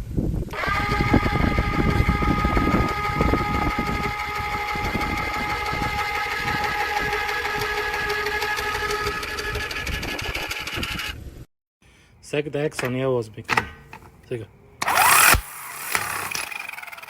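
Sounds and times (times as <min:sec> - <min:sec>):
hydraulic jack motor whining: 0:00.5 - 0:11.1, 0:14.8 - 0:17.0.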